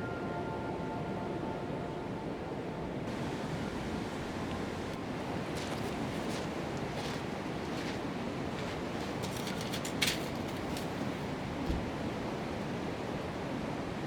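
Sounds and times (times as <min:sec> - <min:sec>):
low thump: 0:11.6 - 0:12.0.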